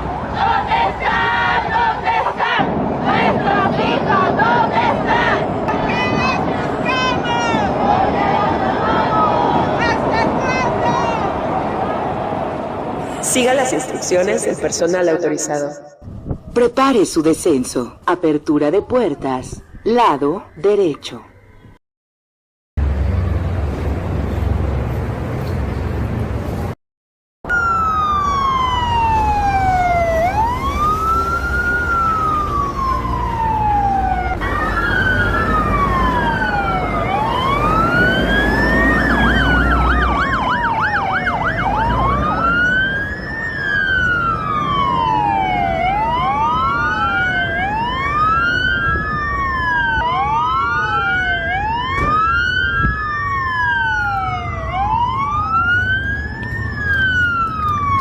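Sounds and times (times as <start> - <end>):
emergency sirens wailing: 0.0 - 17.5, 27.5 - 58.0
fast siren yelp: 27.5 - 58.0.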